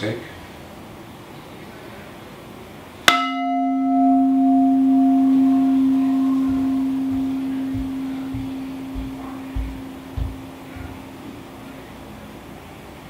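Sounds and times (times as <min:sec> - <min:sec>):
struck metal bowl ringing: 0:03.1 - 0:11.9.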